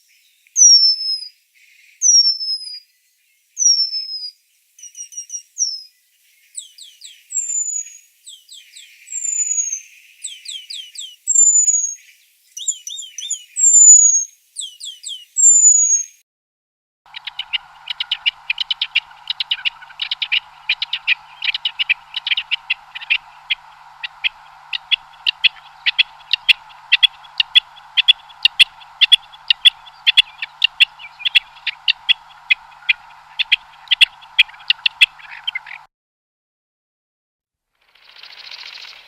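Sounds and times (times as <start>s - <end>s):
bird chip notes: 17.1s - 35.9s
steady background hiss: 17.1s - 35.9s.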